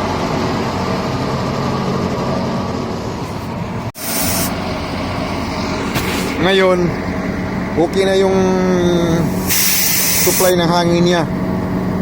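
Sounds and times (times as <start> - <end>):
truck engine running: 0.0 - 12.0
hydraulic pump running: 3.0 - 10.6
short hiss: 4.0 - 4.6, 9.2 - 10.5.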